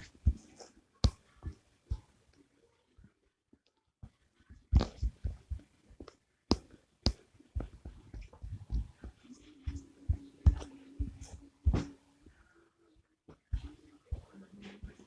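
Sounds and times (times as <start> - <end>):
faint low hum: 0.0 - 15.0
soft thumps and clicks: 3.5 - 12.4.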